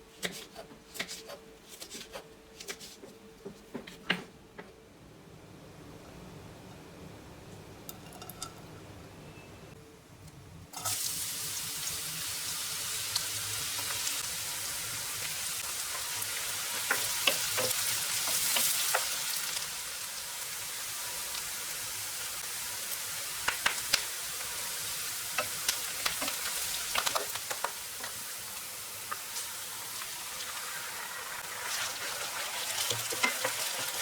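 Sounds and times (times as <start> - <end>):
food sizzling in hot oil: 10.8 - 34.0.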